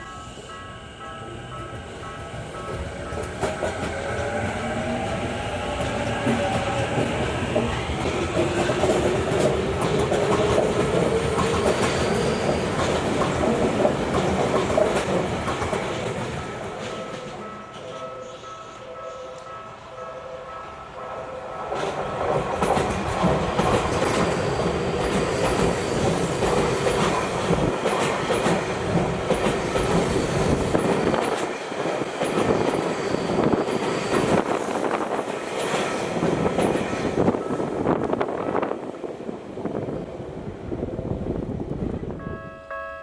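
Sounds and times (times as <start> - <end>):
train wheels clattering over rails: 1.8 - 18.0, 21.7 - 38.6.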